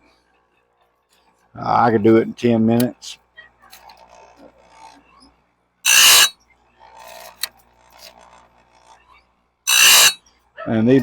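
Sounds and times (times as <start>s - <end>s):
sharpener grinding blade teeth: 5.9s - 6.3s, 9.7s - 10.2s.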